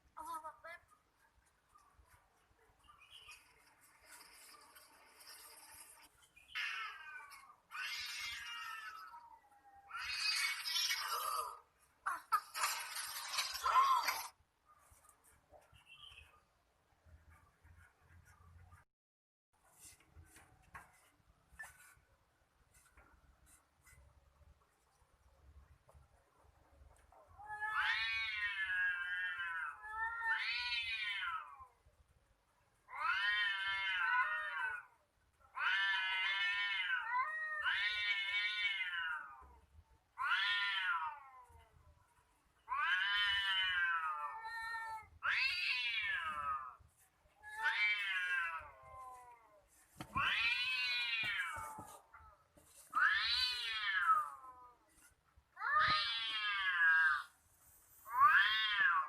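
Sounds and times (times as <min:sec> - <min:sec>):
cats yowling in a fight: 0:06.6 - 0:11.6, 0:27.4 - 0:31.8, 0:32.9 - 0:41.7, 0:42.6 - 0:46.8, 0:47.4 - 0:54.8, 0:55.6 - 0:57.3, 0:58.1 - 0:59.0.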